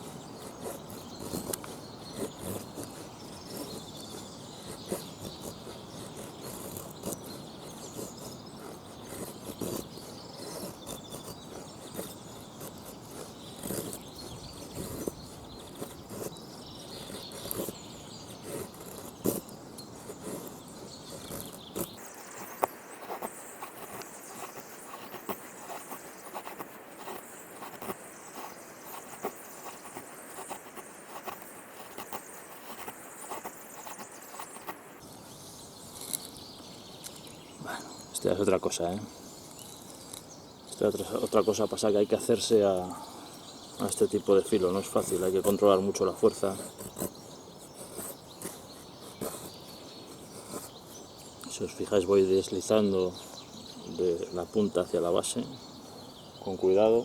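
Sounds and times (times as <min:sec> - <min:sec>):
knife shaving wooden stick: 0:00.0 - 0:35.0, 0:43.9 - 0:50.8.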